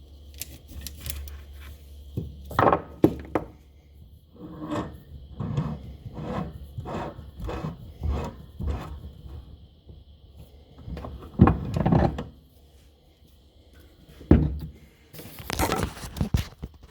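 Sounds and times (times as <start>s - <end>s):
knocks and clunks of parts: 2.2s - 3.6s, 14.3s - 14.8s.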